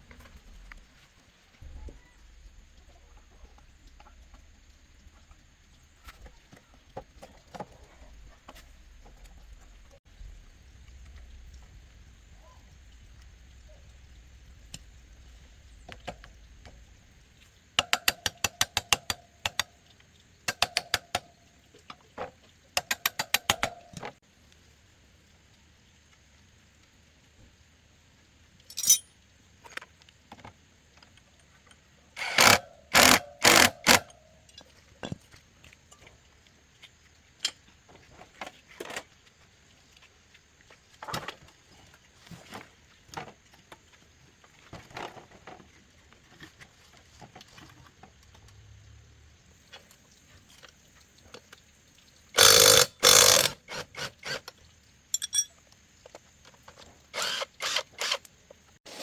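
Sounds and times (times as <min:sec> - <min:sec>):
metal tools clinking: 0:28.7 - 0:29.1, 0:55.1 - 0:55.6.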